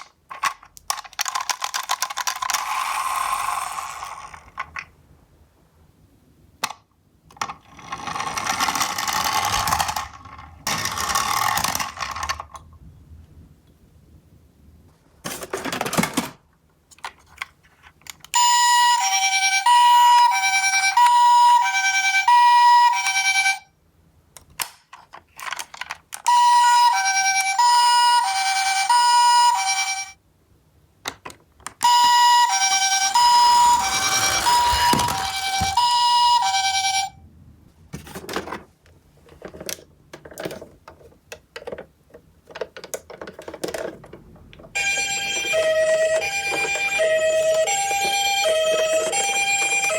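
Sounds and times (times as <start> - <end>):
plastic toys clicking and rattling: 0.0 - 4.9, 6.6 - 12.7, 15.2 - 18.4, 24.4 - 27.6, 38.1 - 49.9
toy two-tone siren: 18.4 - 23.7, 26.2 - 30.2, 31.8 - 37.2, 44.8 - 49.9.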